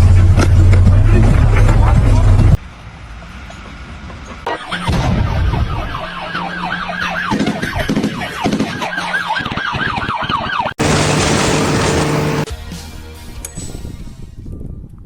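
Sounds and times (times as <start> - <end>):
siren yelping: 4.5 - 12.5
loud rushing noise: 10.8 - 12.5
steady low hum: 10.8 - 12.5.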